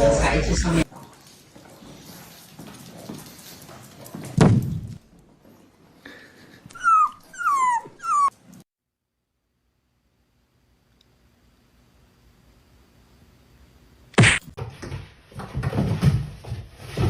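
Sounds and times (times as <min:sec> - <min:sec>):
loud thump: 0:04.4 - 0:05.0, 0:14.2 - 0:14.6
dog whimpering: 0:06.7 - 0:08.4.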